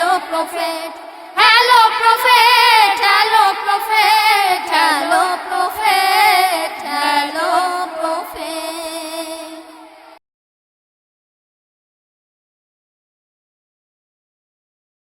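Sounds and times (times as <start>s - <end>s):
person singing ornamented melody: 0.0s - 10.0s.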